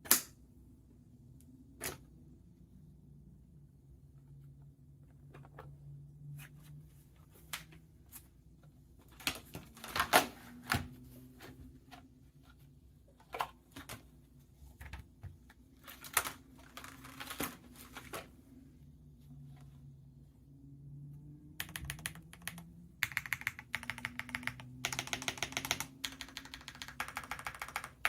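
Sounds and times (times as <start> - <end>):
mechanical keyboard clicks and knocks: 21.6 - 28.0.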